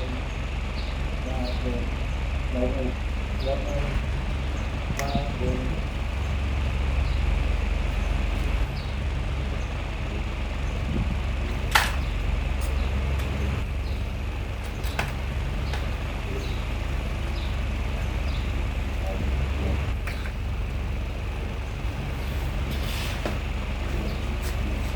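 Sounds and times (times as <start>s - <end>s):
electric fan running: 0.0s - 24.9s
sharp click: 11.7s - 13.3s.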